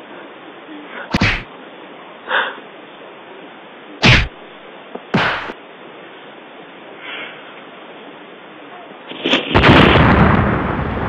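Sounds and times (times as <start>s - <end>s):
steady hiss: 0.0s - 10.4s
punch sound effects: 1.1s - 1.5s, 4.0s - 4.4s, 5.2s - 5.6s.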